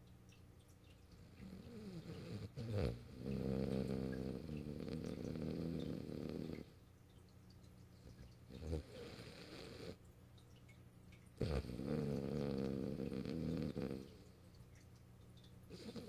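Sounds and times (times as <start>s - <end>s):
dog snoring and snorting: 1.3s - 6.8s, 8.5s - 10.0s, 11.4s - 14.2s, 15.7s - 16.0s.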